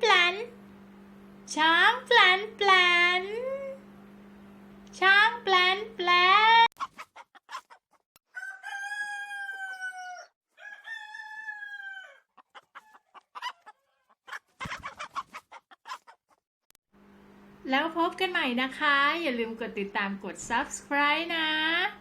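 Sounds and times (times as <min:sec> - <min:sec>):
chickens clucking: 0:06.8 - 0:08.0, 0:10.9 - 0:16.4
rooster crowing: 0:08.3 - 0:14.0.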